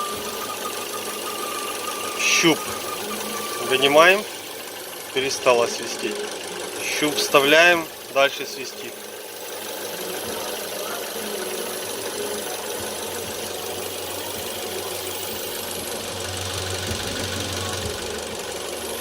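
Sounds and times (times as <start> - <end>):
steady whistle: 0.0 - 5.8
car engine idling: 0.0 - 19.0.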